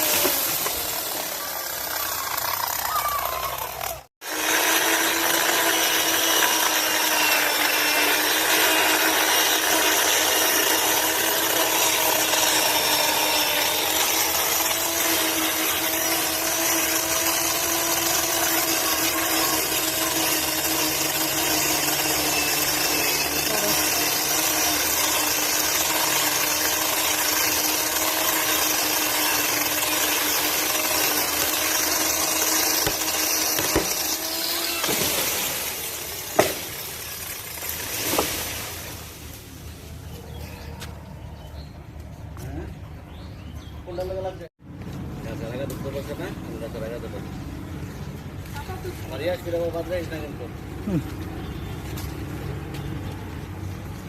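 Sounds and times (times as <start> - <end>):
chainsaw running: 0.0 - 40.2.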